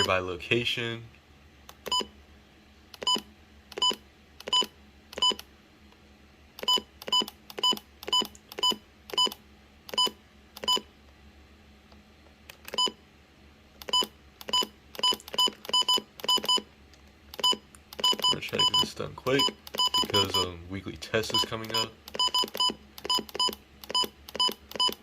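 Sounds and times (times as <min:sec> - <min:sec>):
radio key beeps: 0:17.4 - 0:20.5, 0:21.3 - 0:25.0.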